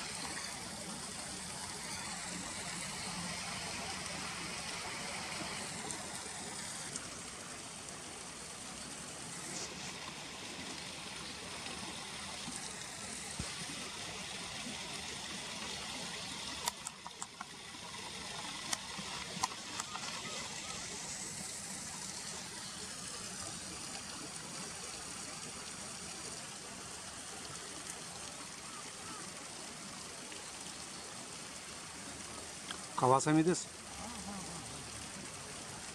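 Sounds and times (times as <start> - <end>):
flowing river water: 0.0 - 35.9
sharp clicks: 16.6 - 17.5.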